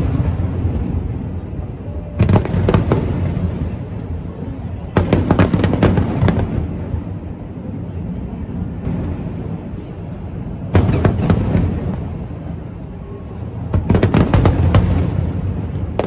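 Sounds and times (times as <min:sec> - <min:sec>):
fireworks crackling bangs: 0:00.0 - 0:07.8, 0:08.6 - 0:16.0
fireworks booming: 0:00.0 - 0:16.0
sharp firework cracks: 0:10.7 - 0:12.3.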